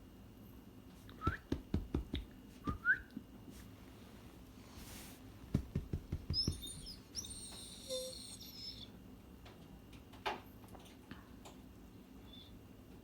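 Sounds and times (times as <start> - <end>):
soft taps: 5.5 - 7.0
small bird chirping: 6.3 - 8.9.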